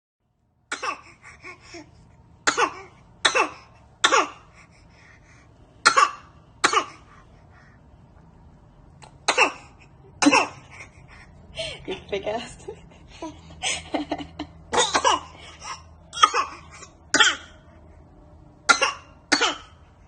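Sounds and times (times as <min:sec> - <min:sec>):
baby fake coughing: 0:00.7 - 0:01.8, 0:02.4 - 0:04.5, 0:05.8 - 0:07.1, 0:09.2 - 0:10.9, 0:14.7 - 0:17.6, 0:18.7 - 0:19.8.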